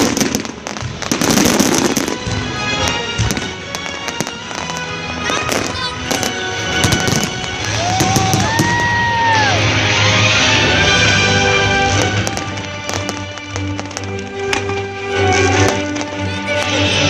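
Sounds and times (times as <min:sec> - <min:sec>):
background music: 0:00.0 - 0:17.0
fireworks bangs and crackling: 0:00.0 - 0:17.0
rising and falling firework whistles: 0:06.8 - 0:09.7.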